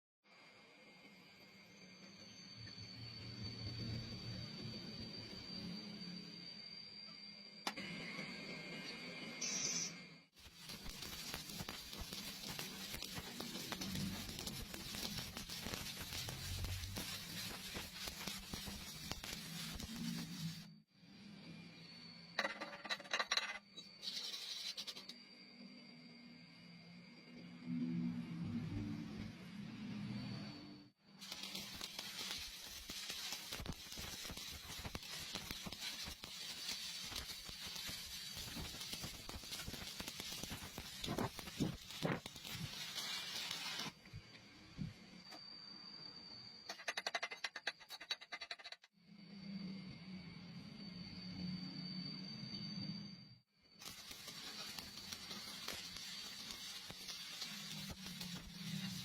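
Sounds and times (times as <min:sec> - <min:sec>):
welding arc crackling: 0:09.4 - 0:20.7, 0:31.1 - 0:44.0, 0:53.8 - 0:59.0.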